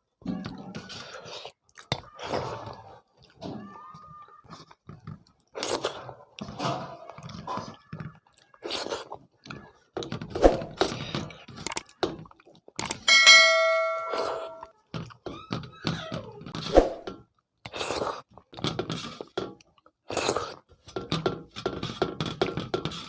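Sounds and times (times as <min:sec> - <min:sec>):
bright ringing tone: 0:13.0 - 0:14.7.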